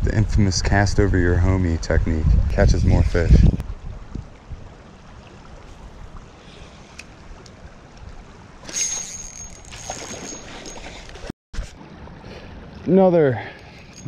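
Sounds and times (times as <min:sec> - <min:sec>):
wind on microphone: 0:00.0 - 0:04.8
creek water rushing: 0:03.6 - 0:10.5.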